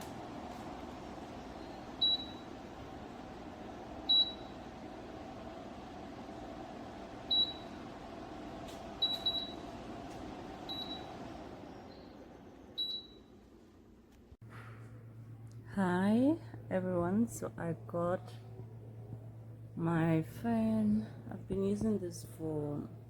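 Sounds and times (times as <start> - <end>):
tower fan air rush: 0.0 - 12.7.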